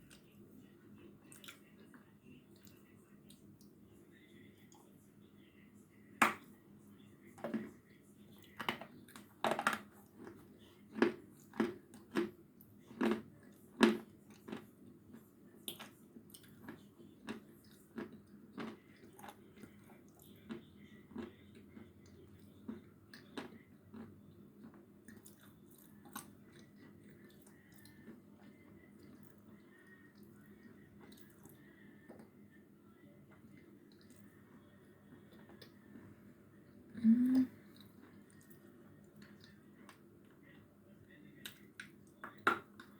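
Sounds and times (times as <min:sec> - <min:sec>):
chalk crunching while chewed: 0:10.0 - 0:29.4.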